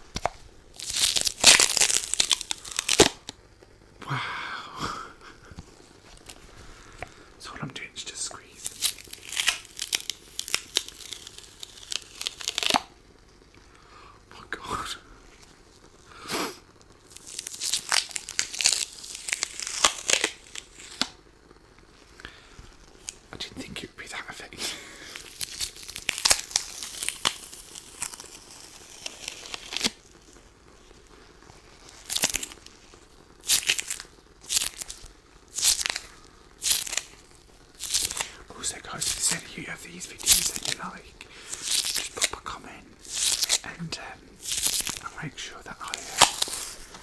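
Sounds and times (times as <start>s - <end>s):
lint roller sheet crackling: 0.0s - 3.4s, 8.6s - 13.4s, 16.9s - 23.4s, 25.0s - 47.0s.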